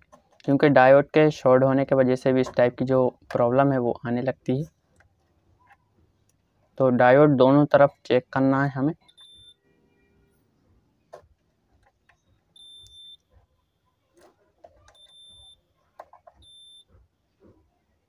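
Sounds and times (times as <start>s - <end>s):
multimeter high-pitched beeps: 9.0s - 9.6s, 12.5s - 13.3s, 14.9s - 15.6s, 16.4s - 16.9s.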